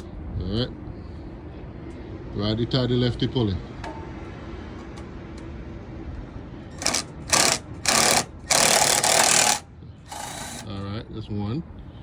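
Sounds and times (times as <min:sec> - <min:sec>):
cordless drill bursts: 0:06.8 - 0:10.7.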